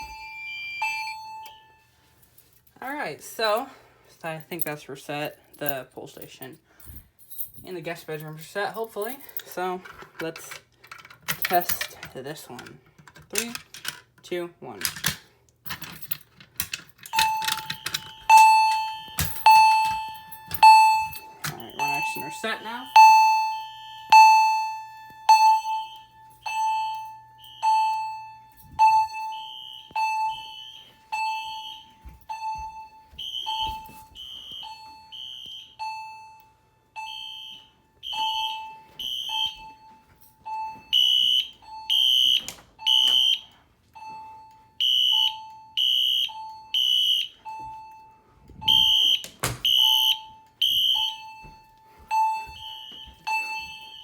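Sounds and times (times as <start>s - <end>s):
high-pitched alarm beeps: 0.0s - 1.8s, 17.1s - 54.0s
alarm chime: 0.0s - 3.8s, 17.1s - 54.0s.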